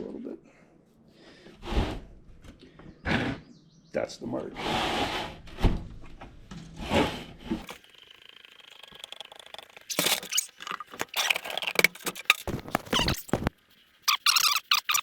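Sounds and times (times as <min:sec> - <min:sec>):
scraping and knocking of objects: 0:09.5 - 0:13.5.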